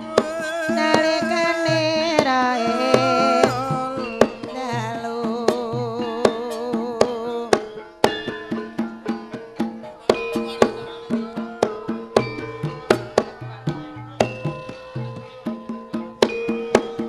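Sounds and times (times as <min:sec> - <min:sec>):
gamelan ensemble music: 0:00.0 - 0:17.0
sharp drum strokes: 0:00.0 - 0:17.0
sustained melody with vibrato: 0:00.0 - 0:17.0.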